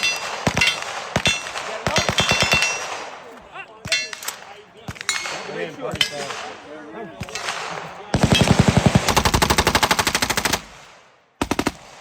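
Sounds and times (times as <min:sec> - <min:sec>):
voices: 0:00.1 - 0:09.1
automatic gunfire: 0:07.3 - 0:10.8, 0:11.4 - 0:12.0.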